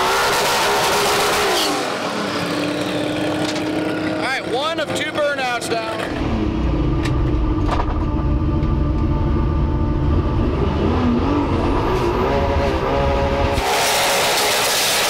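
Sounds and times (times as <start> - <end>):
loud turbocharged car engines: 0.0 - 15.0.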